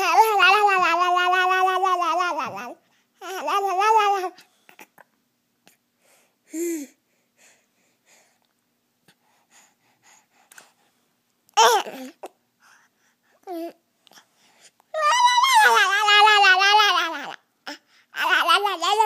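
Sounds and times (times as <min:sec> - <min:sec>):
faint breaths: 0:05.7 - 0:11.2, 0:12.0 - 0:14.9.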